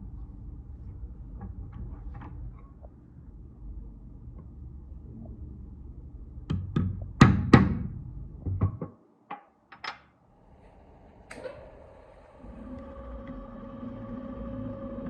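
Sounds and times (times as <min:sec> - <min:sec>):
hard objects knocking: 0:06.5 - 0:10.0.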